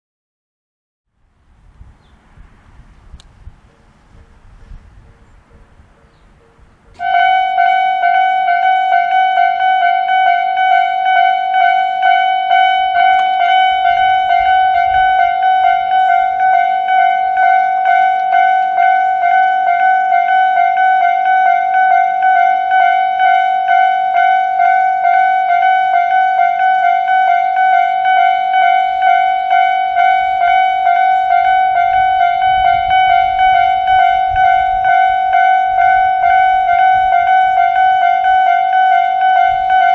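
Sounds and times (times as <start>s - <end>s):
electronic crossing bell ringing: 5.2s - 39.9s.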